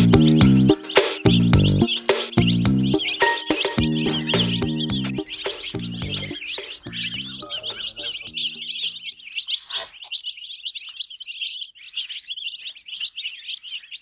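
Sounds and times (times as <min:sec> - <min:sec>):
background music: 0:00.0 - 0:09.0
baby chicks peeping: 0:00.0 - 0:14.0.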